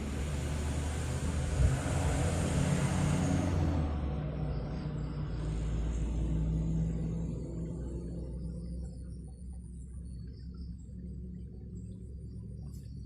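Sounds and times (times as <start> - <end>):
road vehicle passing: 0.0 - 9.7.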